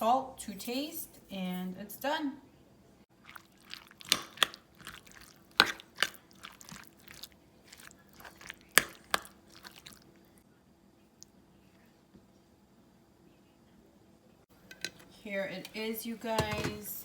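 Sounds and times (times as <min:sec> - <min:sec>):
spoon stirring food: 0:03.1 - 0:10.4, 0:14.6 - 0:16.9.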